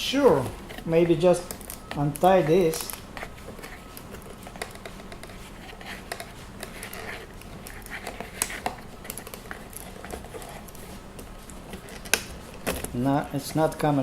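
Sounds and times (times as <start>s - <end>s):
hard plastic packaging clicks and scrapes: 0.5s - 14.0s.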